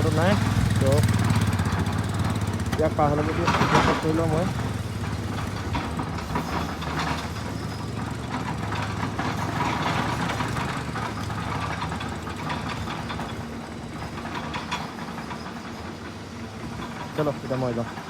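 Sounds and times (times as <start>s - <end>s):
motorcycle engine idling: 0.0s - 12.6s.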